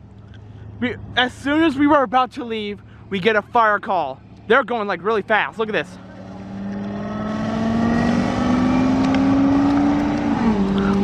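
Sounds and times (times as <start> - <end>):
fire truck accelerating: 5.6 - 11.0.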